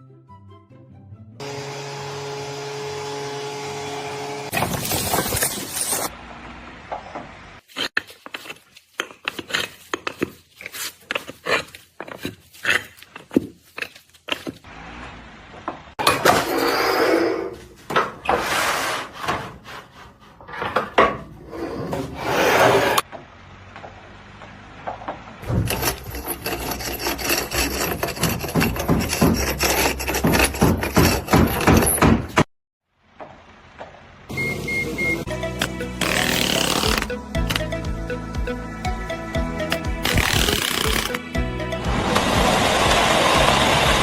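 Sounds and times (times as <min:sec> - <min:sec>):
scraping strokes on wood: 0:25.7 - 0:31.6, 0:35.6 - 0:37.1.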